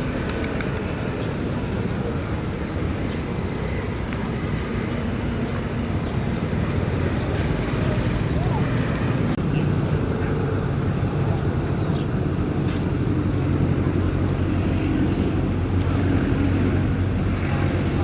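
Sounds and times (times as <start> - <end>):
city traffic rumble: 0.0 - 18.0.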